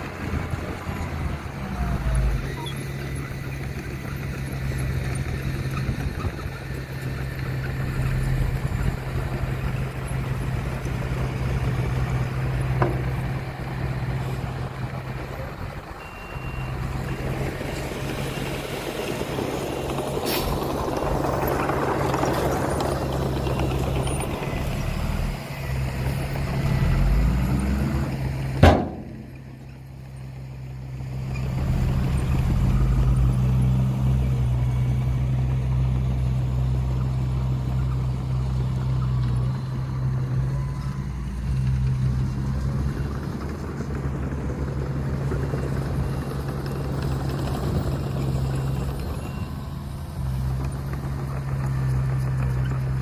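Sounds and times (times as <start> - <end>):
diesel construction machinery running: 0.0 - 53.0
sharp knock: 28.6 - 29.4.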